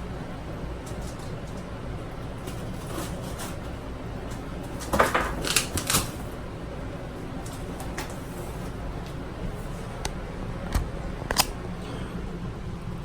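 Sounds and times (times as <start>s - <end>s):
cardboard box scraping and crackling: 2.4s - 3.9s.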